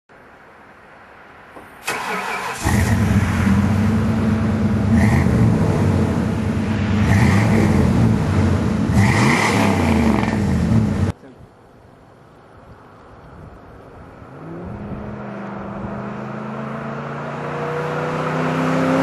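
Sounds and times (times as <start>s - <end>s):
engine cranking: 1.8s - 3.1s
loud engine running: 2.7s - 11.1s.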